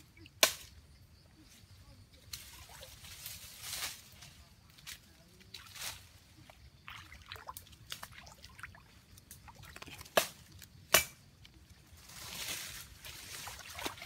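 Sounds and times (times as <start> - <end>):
water splashing and dripping: 5.4 - 10.7, 13.0 - 14.0.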